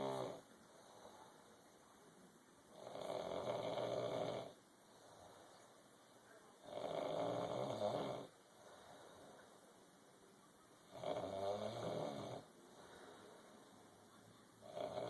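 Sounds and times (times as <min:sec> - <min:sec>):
long snores: 0:00.0 - 0:00.4, 0:02.7 - 0:04.6, 0:06.6 - 0:08.3, 0:10.9 - 0:12.5, 0:14.6 - 0:15.0.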